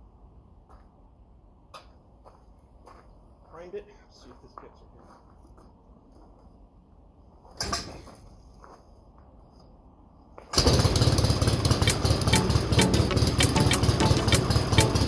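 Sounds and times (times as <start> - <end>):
airplane piston engine starting: 10.6 - 15.0.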